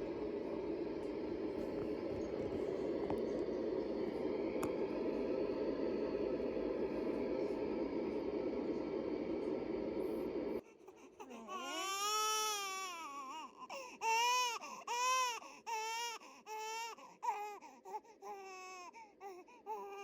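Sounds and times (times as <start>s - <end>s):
baby crying: 11.2s - 20.0s.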